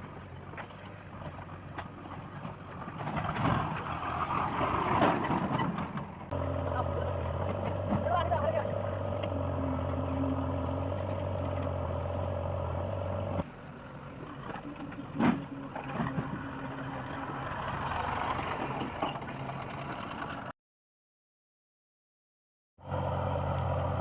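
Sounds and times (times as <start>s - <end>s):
heavy diesel engine running: 6.2s - 20.5s, 22.8s - 24.0s.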